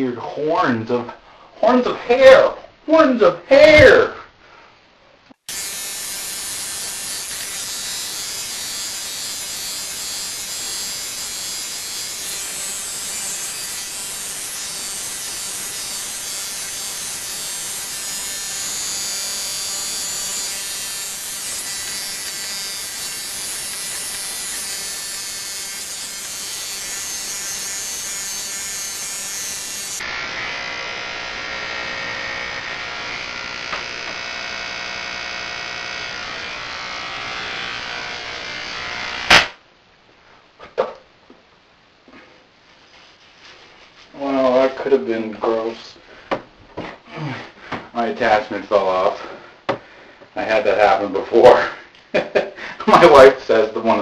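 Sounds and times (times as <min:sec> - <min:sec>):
electric hair clippers buzzing: 0:05.5 - 0:39.6.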